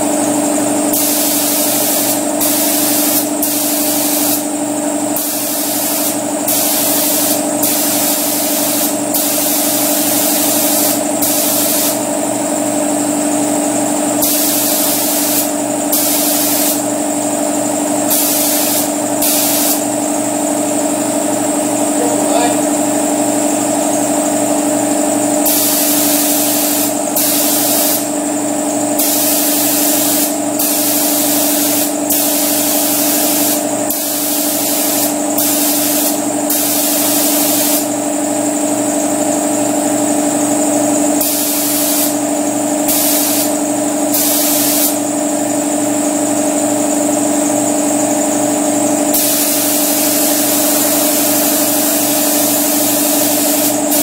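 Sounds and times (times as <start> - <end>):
motor running with fast pulse: 0.0 - 54.0
spray gun air hiss: 0.8 - 12.1, 14.2 - 17.0, 18.0 - 20.0, 25.4 - 28.2, 28.9 - 38.0, 41.2 - 45.1, 49.1 - 54.0.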